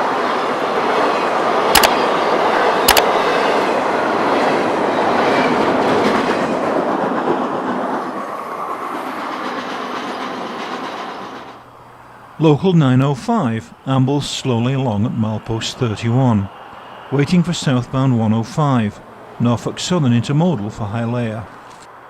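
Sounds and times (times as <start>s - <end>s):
sharp clicks: 1.7s - 2.0s, 2.9s - 3.2s
train wheels clickety-clack: 4.4s - 11.6s.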